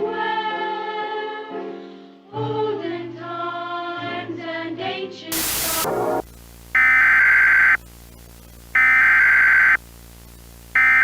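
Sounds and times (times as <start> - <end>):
choir singing slow song: 0.0 - 6.2.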